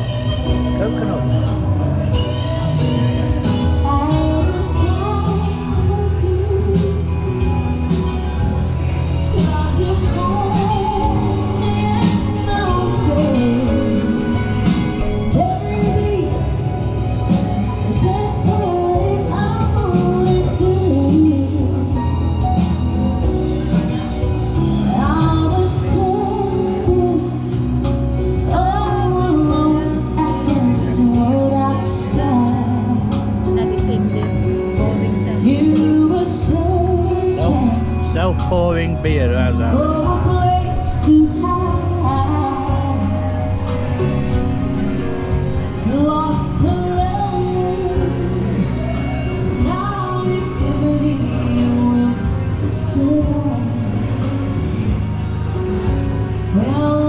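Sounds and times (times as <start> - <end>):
woman singing: 0.0 - 0.8, 1.6 - 38.1, 39.7 - 57.0
band accompaniment: 0.0 - 57.0
music with steady bass line: 0.0 - 57.0.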